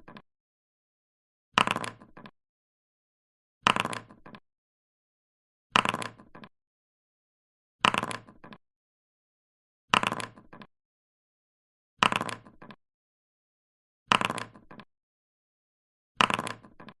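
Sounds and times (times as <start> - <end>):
dice rattling: 5.8 - 6.5, 7.9 - 8.6, 16.2 - 17.0.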